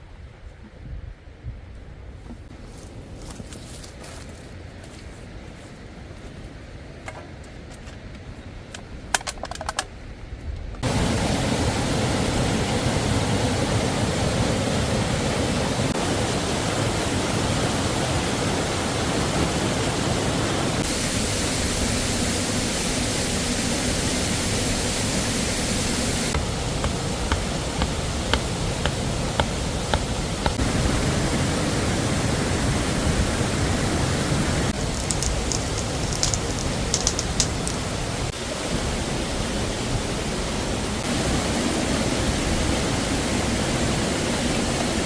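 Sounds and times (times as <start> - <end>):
light clicks: 34.8 - 37.9.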